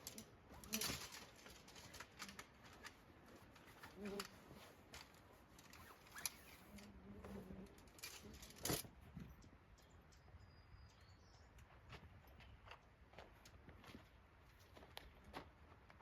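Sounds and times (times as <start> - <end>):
faint high chirp: 9.8 - 11.8.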